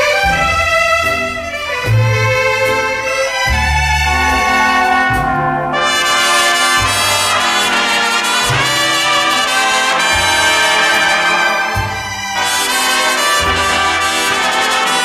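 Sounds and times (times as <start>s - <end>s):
low bass line: 0.0s - 7.8s, 10.0s - 12.4s
brass section sustained chords: 0.3s - 15.0s.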